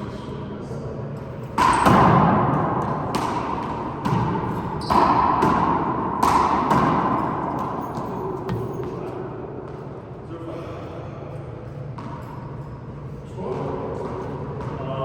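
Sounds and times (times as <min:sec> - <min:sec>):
handball smacking off court walls: 0:01.6 - 0:09.2.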